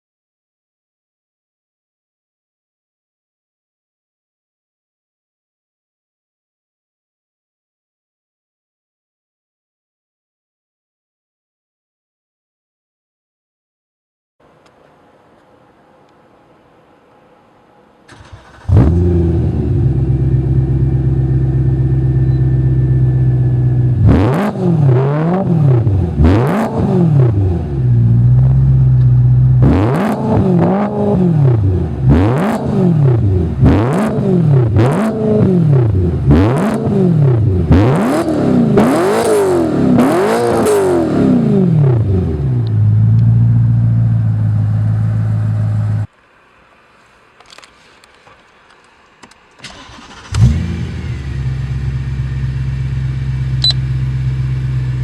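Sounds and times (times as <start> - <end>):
car engine revving: 18.1 - 46.1, 49.6 - 55.0.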